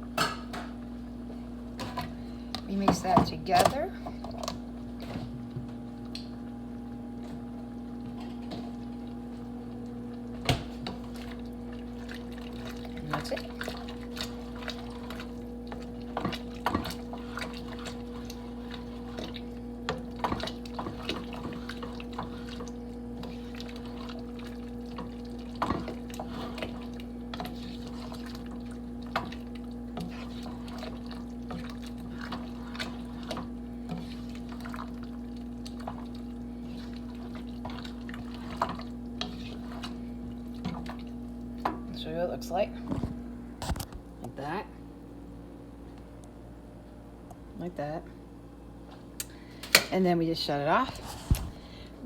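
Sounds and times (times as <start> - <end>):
steady low hum: 0.0 - 52.0
spoon stirring thick stew: 10.8 - 41.1.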